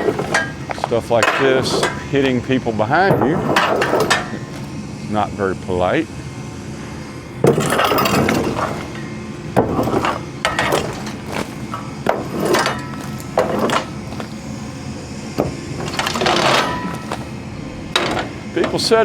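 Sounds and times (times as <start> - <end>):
wood debris knocking and clattering: 0.0 - 4.8, 7.4 - 19.0
low steady hum: 0.0 - 19.0.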